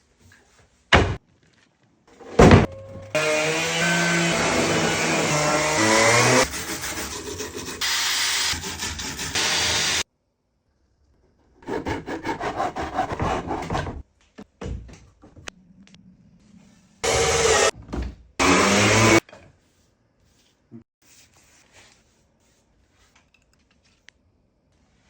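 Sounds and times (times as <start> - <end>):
loud machine noise: 17.0 - 17.7.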